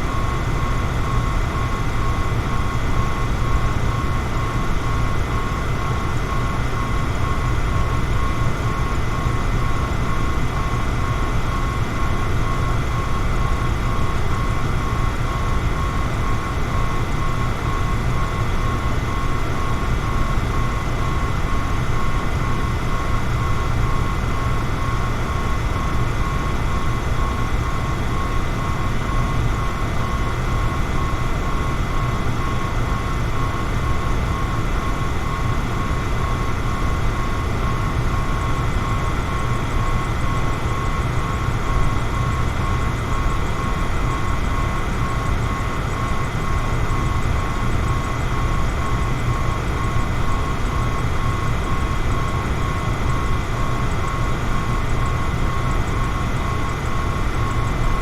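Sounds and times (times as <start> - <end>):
electric fan running: 0.0 - 58.0.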